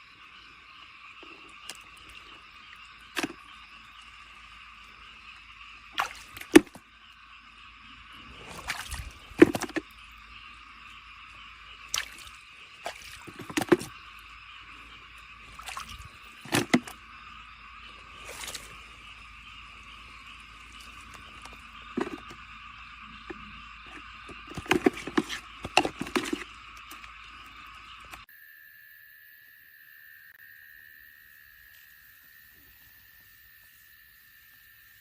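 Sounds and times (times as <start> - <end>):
water and mud splashing: 0.3 - 28.2.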